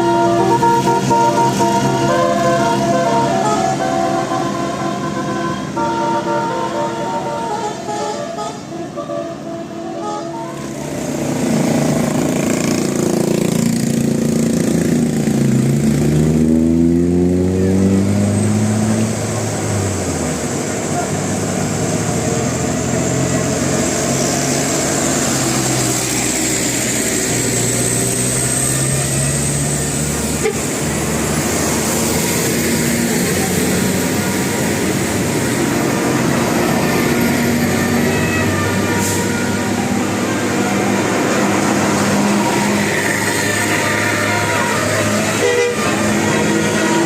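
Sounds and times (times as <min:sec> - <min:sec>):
multi-tone melodic air horn: 0:00.0 - 0:11.4, 0:30.3 - 0:30.9, 0:36.9 - 0:47.0
bus engines running: 0:00.0 - 0:47.0.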